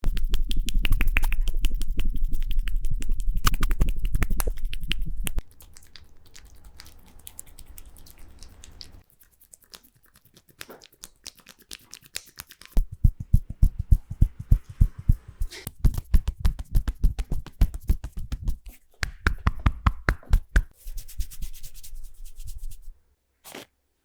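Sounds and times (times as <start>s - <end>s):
hands tapping on head: 0.0s - 5.0s, 12.8s - 20.7s
finger snapping: 0.6s - 2.6s
low rumble: 12.8s - 15.6s.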